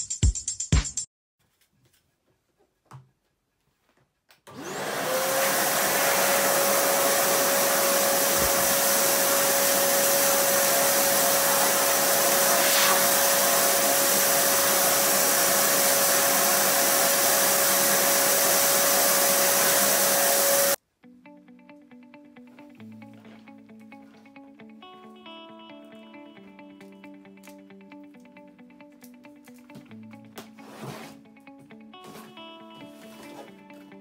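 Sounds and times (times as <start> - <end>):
vacuum cleaner motor whining: 4.5 - 20.8.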